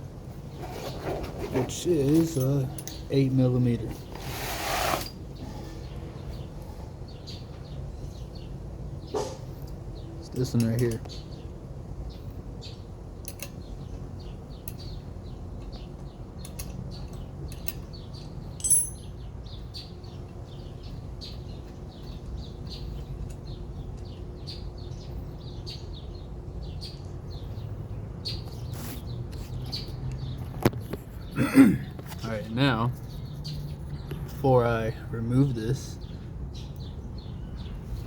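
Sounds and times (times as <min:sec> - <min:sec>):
small birds chirping: 0:00.0 - 0:38.0
sharp ringing click: 0:18.6 - 0:19.2.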